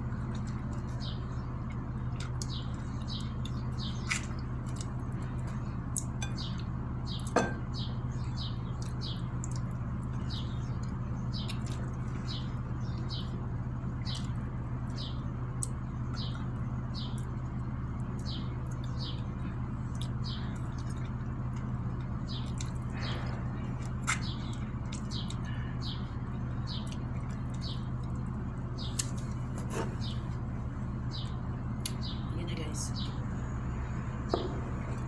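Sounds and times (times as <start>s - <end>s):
steady low hum: 0.0s - 35.0s
utensil clinking on dishware: 7.4s - 7.7s.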